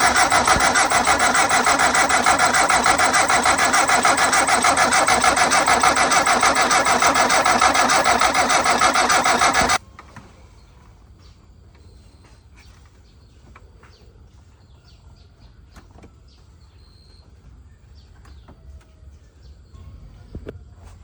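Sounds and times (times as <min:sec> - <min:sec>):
truck engine running: 0:00.0 - 0:09.8.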